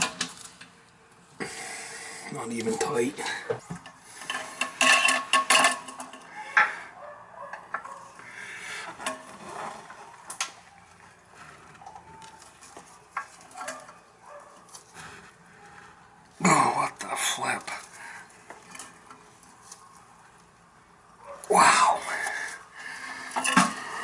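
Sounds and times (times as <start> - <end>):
tools and metal hardware clinking: 2.7 - 6.7, 12.2 - 14.5.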